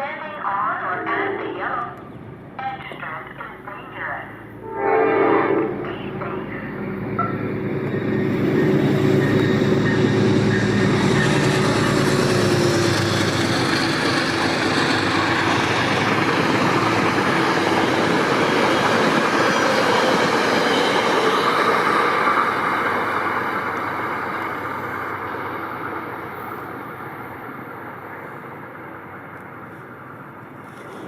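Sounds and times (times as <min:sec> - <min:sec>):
locomotive engine drone: 0:00.0 - 0:31.0
train wheels clattering on rails: 0:05.9 - 0:26.8.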